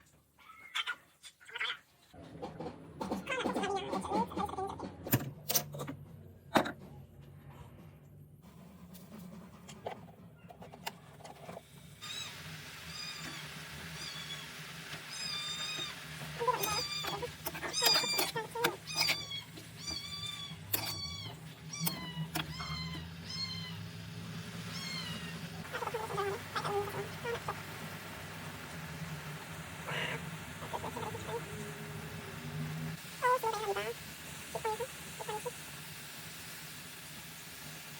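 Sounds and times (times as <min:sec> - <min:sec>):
lower animal cries: 0:15.1 - 0:23.8, 0:24.6 - 0:27.6
high-pitched animal calls: 0:15.1 - 0:23.9, 0:24.6 - 0:27.6, 0:29.9 - 0:31.6, 0:33.2 - 0:35.6.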